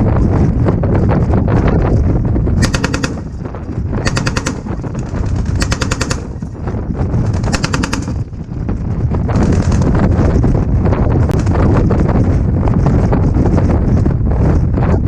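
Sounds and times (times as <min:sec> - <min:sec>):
wind noise on microphone: 0:00.0 - 0:15.0
machine gun firing bursts: 0:02.6 - 0:06.6, 0:07.2 - 0:08.4, 0:09.3 - 0:10.0.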